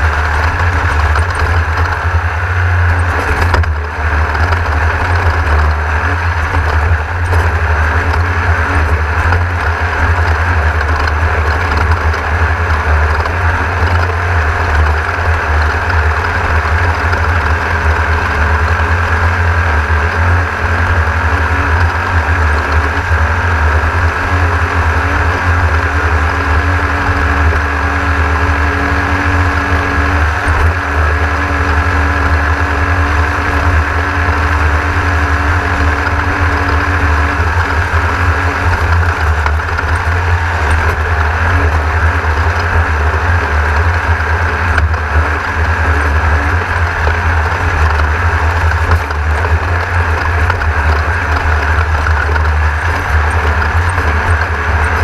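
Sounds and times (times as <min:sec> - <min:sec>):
car rumbling over rough ground: 0:00.0 - 0:55.0
race car engine under load: 0:00.0 - 0:55.0.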